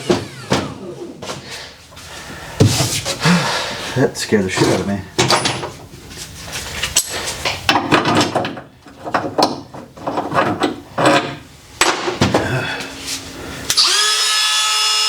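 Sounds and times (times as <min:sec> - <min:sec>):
tools and parts clattering on workbench: 0:04.5 - 0:13.2.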